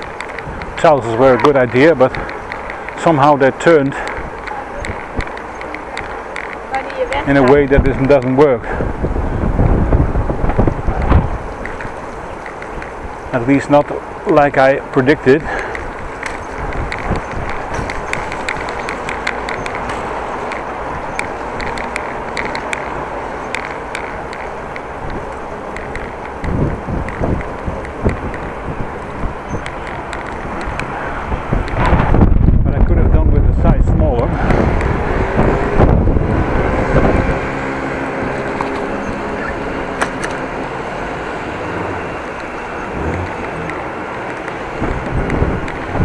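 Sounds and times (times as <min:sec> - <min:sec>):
bicycle tyre and air noise: 0:00.0 - 0:46.0
bike ticking and rattling: 0:00.0 - 0:46.0
wind buffeting microphone: 0:00.0 - 0:46.0.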